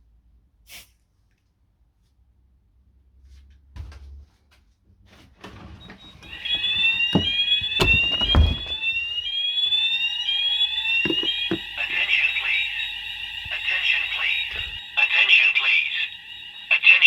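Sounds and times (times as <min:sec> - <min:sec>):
fire alarm rising sweep: 0:05.4 - 0:17.0
loud thumps: 0:06.1 - 0:09.2, 0:11.0 - 0:11.8
faint knocks: 0:11.0 - 0:11.7.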